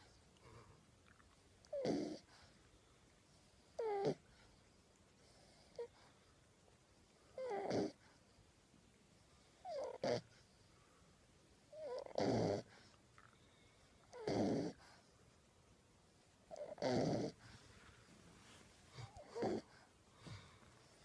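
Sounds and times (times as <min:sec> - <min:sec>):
puppy snoring: 0:00.0 - 0:02.6, 0:03.3 - 0:04.6, 0:05.2 - 0:06.2, 0:07.3 - 0:08.2, 0:09.4 - 0:10.6, 0:11.7 - 0:12.9, 0:14.0 - 0:15.2, 0:16.5 - 0:17.6, 0:18.8 - 0:21.0.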